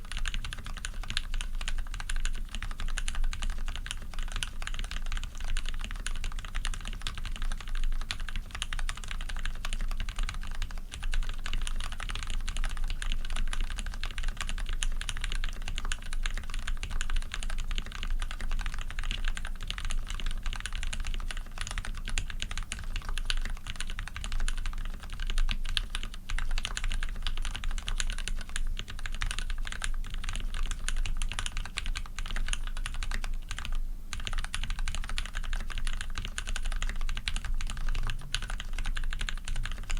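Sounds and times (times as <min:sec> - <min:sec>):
fast mechanical keyboard typing: 0:00.0 - 0:39.9.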